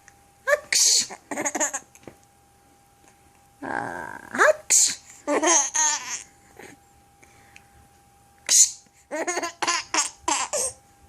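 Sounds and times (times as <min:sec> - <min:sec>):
baby giggling: 0:00.5 - 0:01.9, 0:05.3 - 0:06.2, 0:08.6 - 0:10.8.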